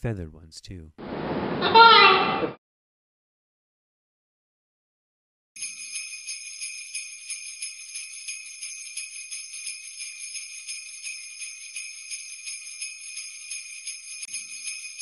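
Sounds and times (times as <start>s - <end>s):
jingle bells shaken: 5.6s - 15.0s.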